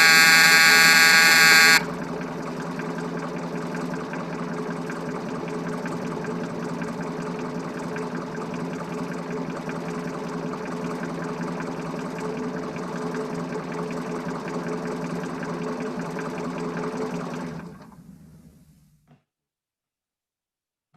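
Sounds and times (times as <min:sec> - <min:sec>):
machine humming with fast ticking: 0:00.0 - 0:13.2.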